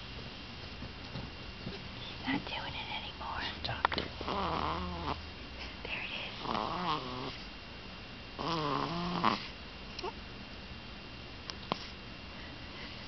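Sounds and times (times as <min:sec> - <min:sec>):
baby snoring: 0:04.2 - 0:05.2, 0:06.3 - 0:07.4, 0:08.4 - 0:09.5.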